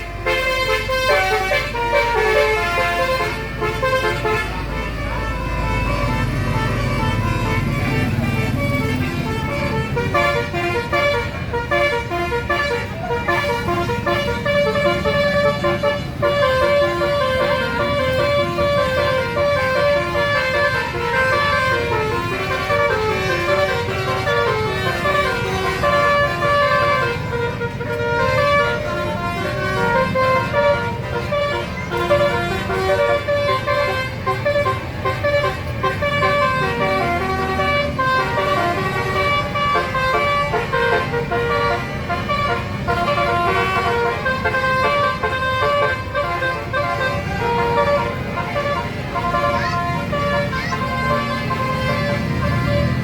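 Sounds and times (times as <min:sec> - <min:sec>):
multi-tone bus horn tune: 0:00.0 - 0:53.0.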